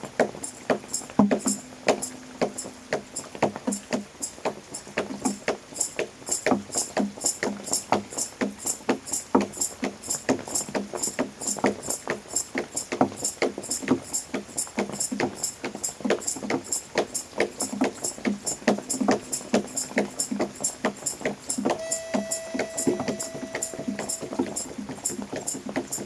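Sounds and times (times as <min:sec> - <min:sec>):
light high ticking: 0:00.0 - 0:26.0
music with sharp struck notes: 0:18.7 - 0:25.1.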